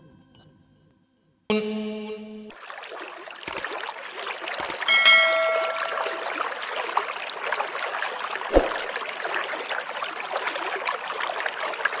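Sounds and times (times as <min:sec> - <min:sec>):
water trickling: 0:02.5 - 0:12.0.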